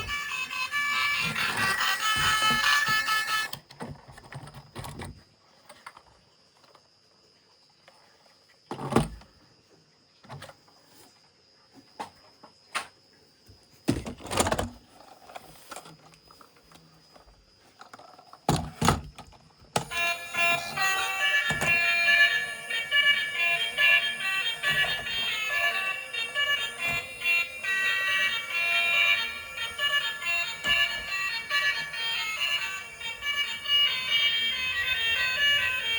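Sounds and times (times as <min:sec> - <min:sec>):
faint steady high tone: 0:00.0 - 0:03.6, 0:19.8 - 0:35.9.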